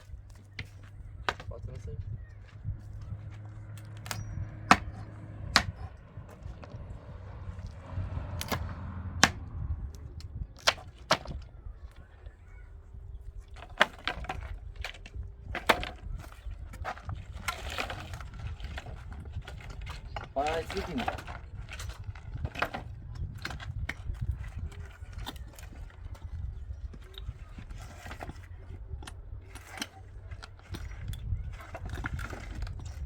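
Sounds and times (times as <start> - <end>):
low steady rumble: 0.0 - 33.0
hard materials knocking: 4.0 - 6.9, 10.6 - 11.5.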